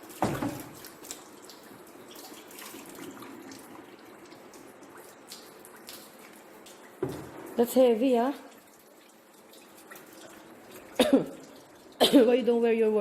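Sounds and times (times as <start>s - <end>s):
coolant trickling and dripping: 0.0s - 13.0s.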